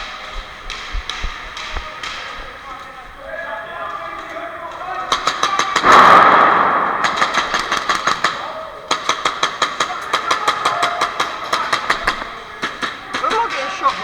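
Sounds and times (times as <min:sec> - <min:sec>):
airsoft gunfire volleys: 0:05.1 - 0:13.5.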